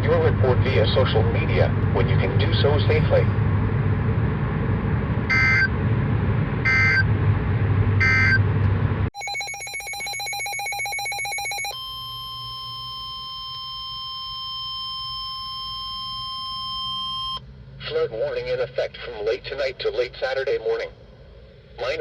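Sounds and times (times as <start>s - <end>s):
steady single-pitch alarm tone: 5.3s - 5.7s, 6.6s - 7.1s, 8.0s - 8.4s, 9.2s - 17.4s
pulsing electronic alert tone: 9.2s - 13.1s.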